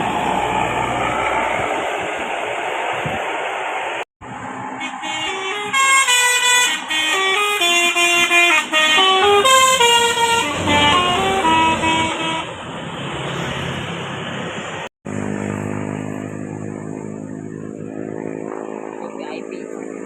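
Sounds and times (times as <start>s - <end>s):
low vehicle rumble: 0.0s - 20.0s
bus air horn melody: 4.6s - 12.7s.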